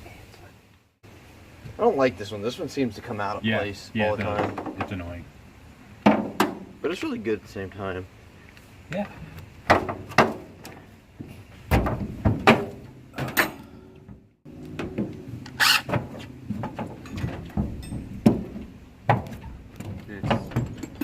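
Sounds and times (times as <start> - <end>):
metallic clanks of tools: 16.7 - 18.4, 19.4 - 21.0.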